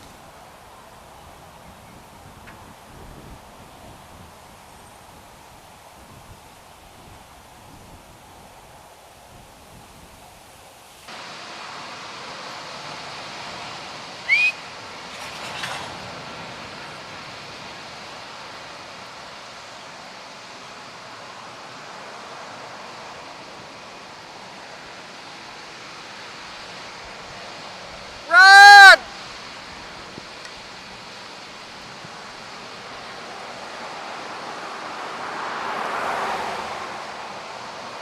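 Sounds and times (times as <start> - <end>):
wind: 0.0 - 38.0
storm rain: 11.1 - 38.0.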